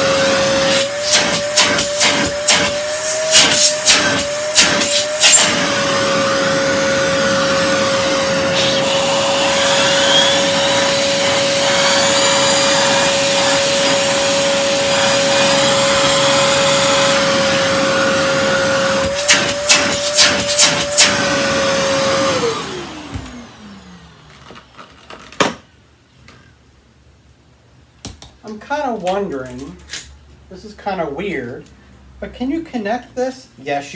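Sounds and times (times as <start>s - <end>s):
vacuum cleaner running: 0.0s - 24.8s.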